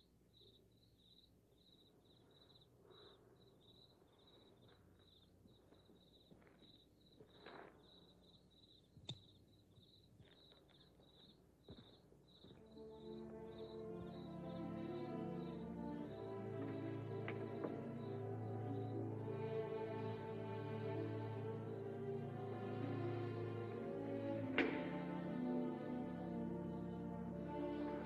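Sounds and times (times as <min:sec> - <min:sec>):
crickets chirping: 0:00.3 - 0:24.1
soft music: 0:12.5 - 0:28.0.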